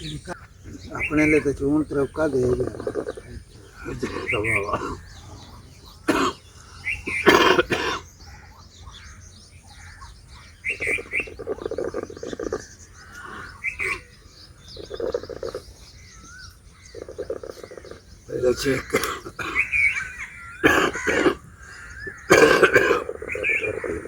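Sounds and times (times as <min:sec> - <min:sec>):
birds chirping: 0:00.0 - 0:24.0
person coughing: 0:06.1 - 0:06.4, 0:07.1 - 0:08.0, 0:18.9 - 0:19.6, 0:20.6 - 0:21.4, 0:22.3 - 0:23.1.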